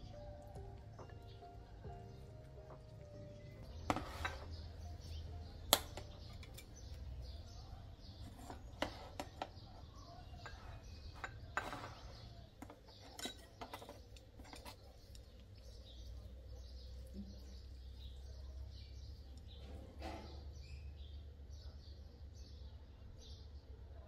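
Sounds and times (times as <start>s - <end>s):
kitchen utensils clinking on dishes: 3.6s - 7.1s, 8.1s - 15.1s.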